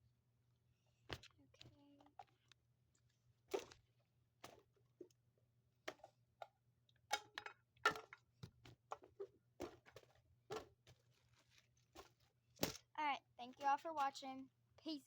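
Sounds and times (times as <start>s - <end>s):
small toys clicking and knocking: 5.9s - 10.9s.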